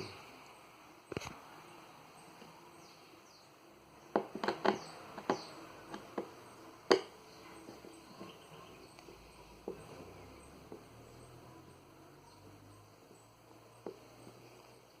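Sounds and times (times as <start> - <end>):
plastic clicks and knocks: 4.1 - 6.3.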